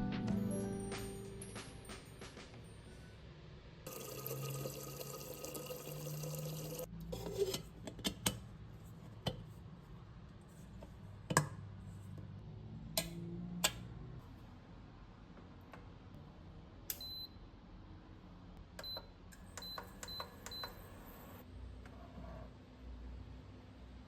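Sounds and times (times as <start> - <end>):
water running from a tap: 3.9 - 6.9.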